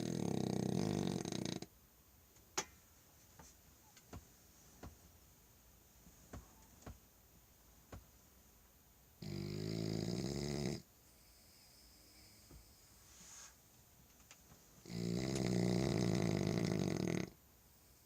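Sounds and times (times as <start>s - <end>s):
dog snoring: 0.0s - 1.7s, 9.2s - 12.4s, 14.8s - 17.4s.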